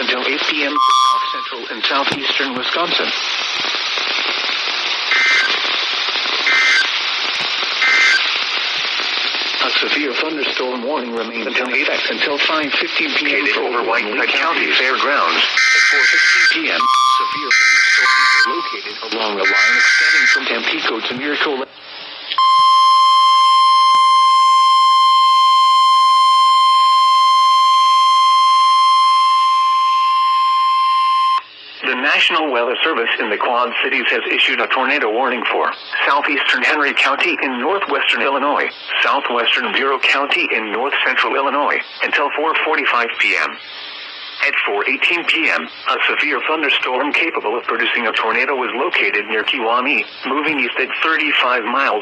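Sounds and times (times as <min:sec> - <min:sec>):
radio static hiss: 0:00.0 - 0:22.6, 0:31.4 - 0:52.0
steady alarm tone: 0:00.8 - 0:01.6, 0:05.1 - 0:05.6, 0:06.4 - 0:06.9, 0:07.8 - 0:08.2, 0:15.6 - 0:18.8, 0:19.4 - 0:20.4, 0:22.4 - 0:31.5
two-tone digital data bursts: 0:00.8 - 0:01.6, 0:05.1 - 0:05.6, 0:06.4 - 0:07.0, 0:07.8 - 0:08.3, 0:15.6 - 0:20.5.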